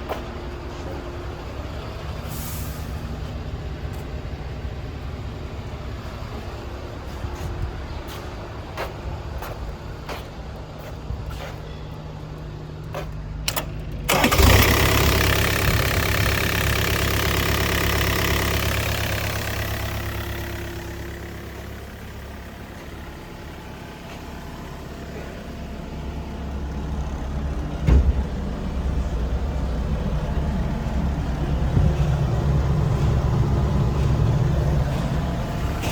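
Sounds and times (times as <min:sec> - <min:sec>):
excavator diesel engine revving: 0:14.0 - 0:35.9.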